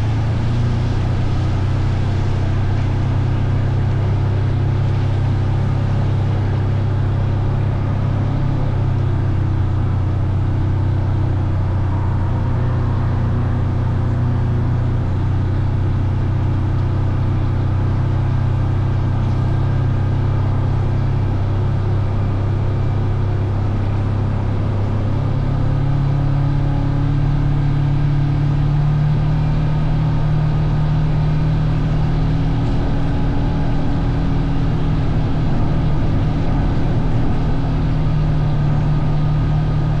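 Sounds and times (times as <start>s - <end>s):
vehicle engine droning: 0.0s - 40.0s.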